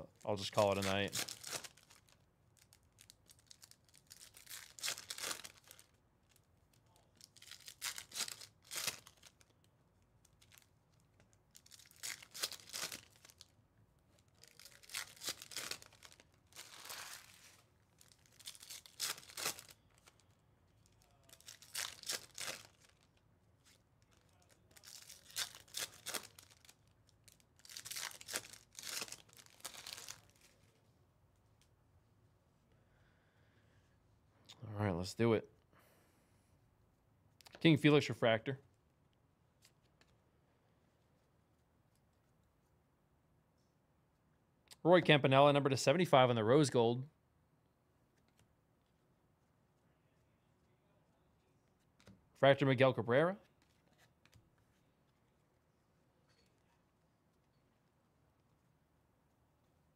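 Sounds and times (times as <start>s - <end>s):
foil packs tearing open: 1.1s - 2.1s, 3.5s - 5.9s, 7.3s - 9.4s, 11.6s - 13.4s, 14.4s - 17.5s, 18.2s - 19.8s, 21.2s - 23.0s, 24.4s - 26.8s, 27.6s - 30.3s.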